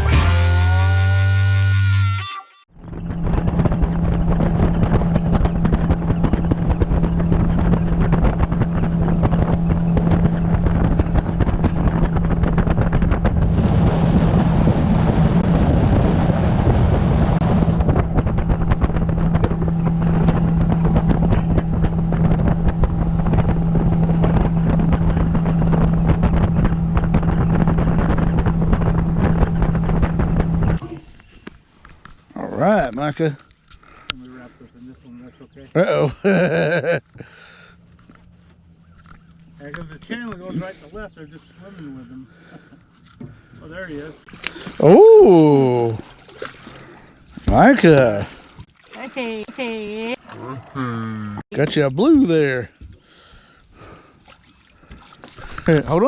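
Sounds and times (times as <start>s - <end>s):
boat motor hum: 0.0s - 56.0s
wind buffeting microphone: 2.8s - 31.3s.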